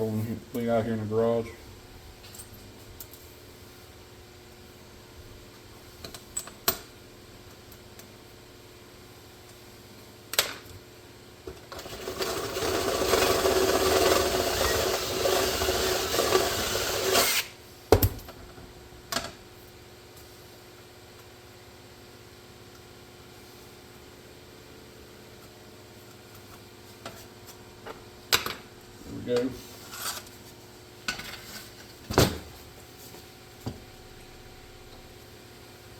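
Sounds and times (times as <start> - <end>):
power drill running: 11.8 - 17.5.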